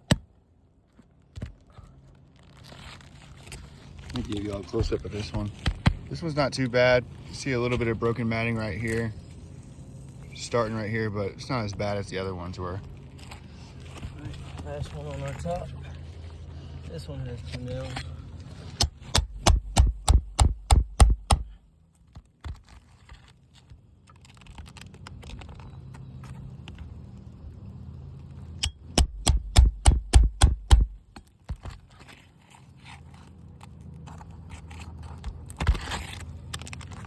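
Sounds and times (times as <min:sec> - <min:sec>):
hammer tapping on metal: 0:18.8 - 0:21.5, 0:28.6 - 0:31.0.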